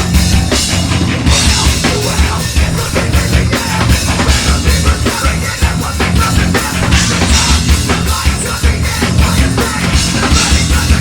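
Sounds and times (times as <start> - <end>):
heavy metal band playing: 0.0 - 11.0.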